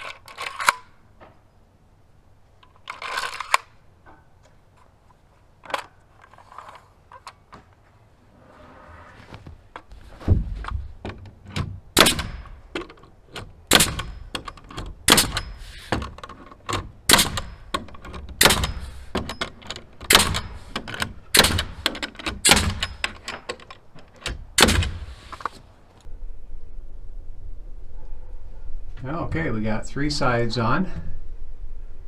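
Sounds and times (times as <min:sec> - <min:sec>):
hammer striking nails: 0:10.6 - 0:25.3.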